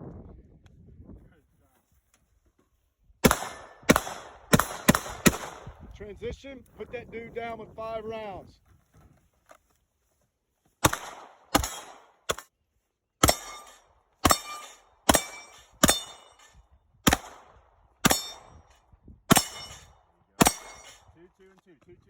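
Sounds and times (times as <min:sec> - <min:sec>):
pistol shots: 0:03.2 - 0:05.8, 0:10.8 - 0:12.4, 0:13.2 - 0:18.6, 0:19.3 - 0:21.0.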